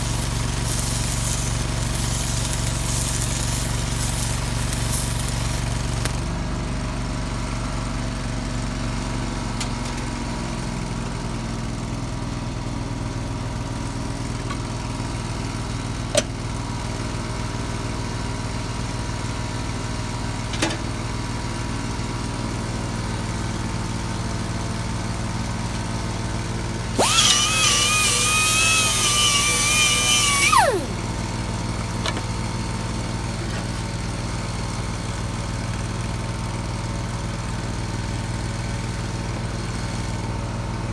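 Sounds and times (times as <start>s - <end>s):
angle grinder whining: 0.0s - 6.2s, 27.0s - 31.0s
welder-generator engine drone: 27.0s - 31.0s.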